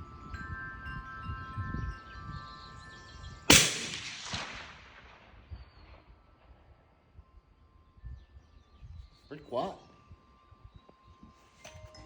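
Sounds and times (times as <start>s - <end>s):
suppressed rifle shot: 3.5s - 5.3s
gunshot echo: 3.5s - 5.5s.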